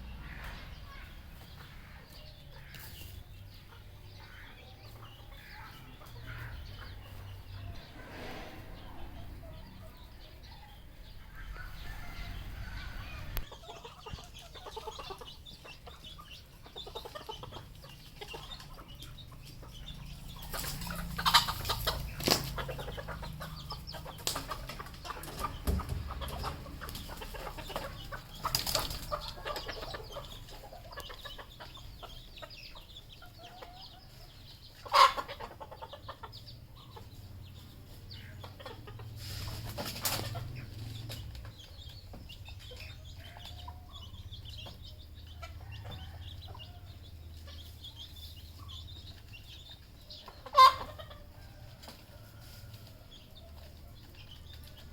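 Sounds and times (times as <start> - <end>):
junglefowl clucking: 0.0 - 10.0, 11.1 - 37.5, 38.1 - 40.8, 50.1 - 52.8.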